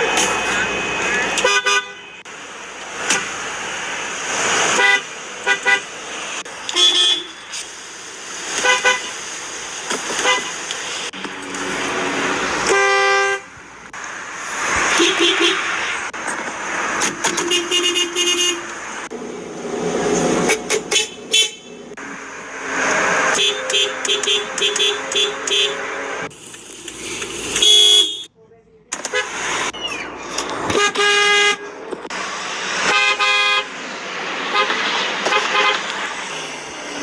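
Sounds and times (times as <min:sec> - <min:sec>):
outdoor background noise: 0:00.0 - 0:37.0
car horn blast: 0:01.4 - 0:02.3, 0:04.8 - 0:05.8, 0:06.7 - 0:07.4, 0:10.2 - 0:10.5, 0:12.6 - 0:13.6, 0:14.9 - 0:15.7, 0:17.4 - 0:18.7, 0:20.5 - 0:21.8, 0:23.3 - 0:25.9, 0:27.6 - 0:28.3, 0:28.9 - 0:29.6, 0:30.6 - 0:31.7, 0:32.8 - 0:33.7, 0:34.5 - 0:35.8
short car horn beeps: 0:27.6 - 0:28.3.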